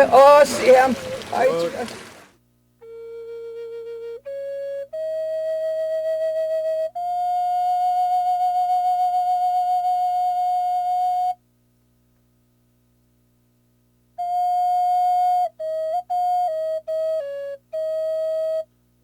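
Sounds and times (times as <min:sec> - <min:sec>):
slow flute melody: 0:02.8 - 0:11.4, 0:14.2 - 0:18.8.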